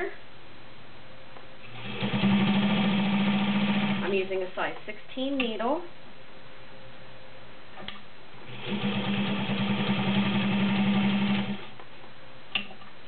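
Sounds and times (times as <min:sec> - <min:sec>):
sewing machine stitching: 0:01.7 - 0:04.1, 0:08.4 - 0:11.7.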